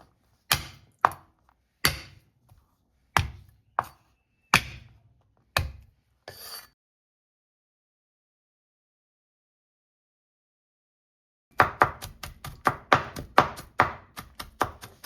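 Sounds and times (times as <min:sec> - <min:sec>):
knife chopping on cutting board: 0:00.5 - 0:02.2, 0:05.6 - 0:05.8, 0:11.6 - 0:15.0.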